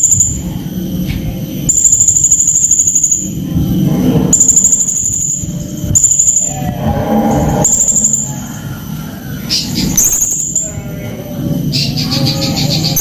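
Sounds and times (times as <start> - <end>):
low background rumble: 0.0 - 13.0
parrot high-pitched trills: 1.7 - 3.4, 4.3 - 8.8, 9.4 - 10.8.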